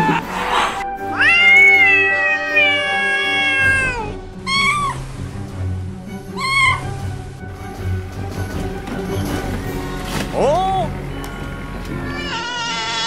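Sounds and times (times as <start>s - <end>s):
background music: 0.0s - 13.0s
cat meowing: 1.1s - 5.0s, 6.3s - 6.9s, 12.1s - 13.0s.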